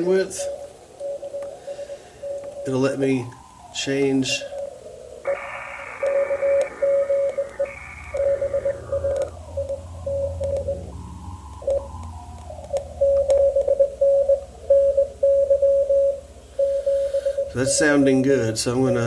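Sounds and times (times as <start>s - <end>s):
receiver hiss: 0.0s - 19.0s
morse code tone: 5.3s - 18.2s.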